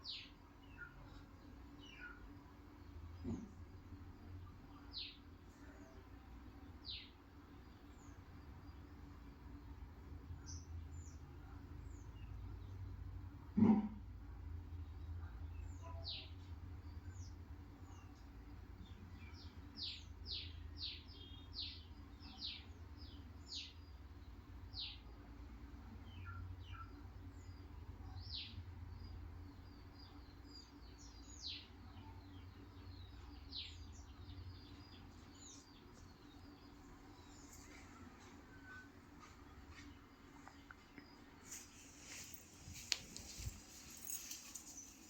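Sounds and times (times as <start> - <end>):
small birds chirping: 0.0 - 13.1, 14.6 - 45.0
faint low hum: 0.0 - 45.0.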